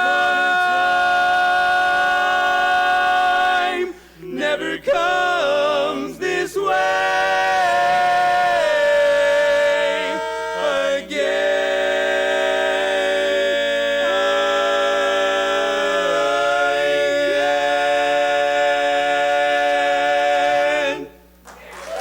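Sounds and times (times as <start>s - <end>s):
barbershop quartet singing a cappella: 0.0s - 21.3s.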